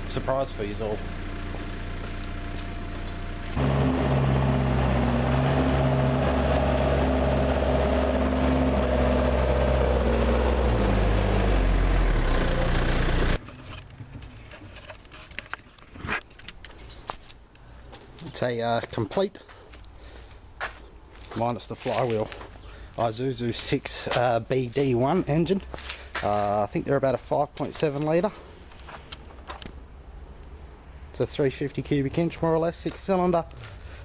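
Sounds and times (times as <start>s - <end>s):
forklift engine idling and revving: 0.0s - 14.2s.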